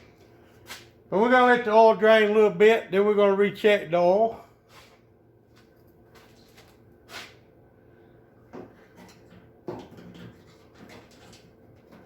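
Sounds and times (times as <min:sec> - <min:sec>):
handling knocks and clunks: 0:08.4 - 0:12.0.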